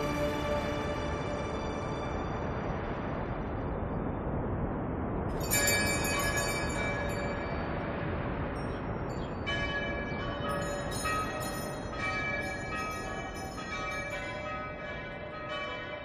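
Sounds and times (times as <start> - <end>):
steady rushing noise: 0.0 - 15.4
church bells ringing: 9.4 - 16.0.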